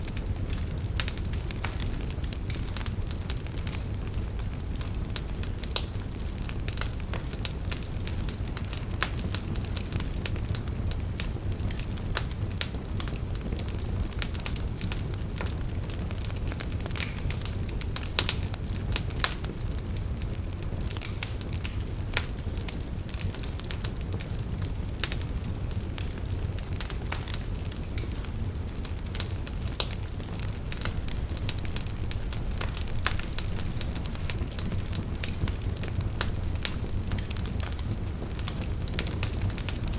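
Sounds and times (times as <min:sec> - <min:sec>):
bonfire burning and crackling: 0:00.0 - 0:39.9.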